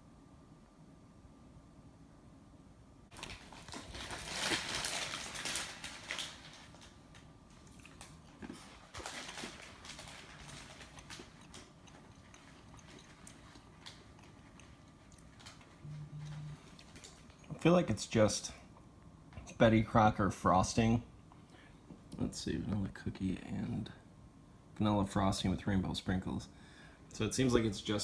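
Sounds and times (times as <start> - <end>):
plastic packaging crinkling: 3.1 - 17.4.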